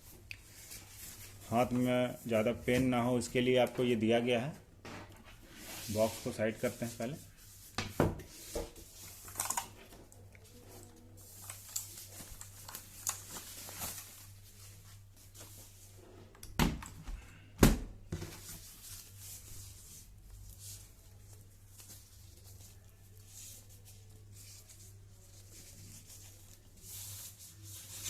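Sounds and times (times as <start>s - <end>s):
cardboard packaging rustling: 10.5s - 15.8s.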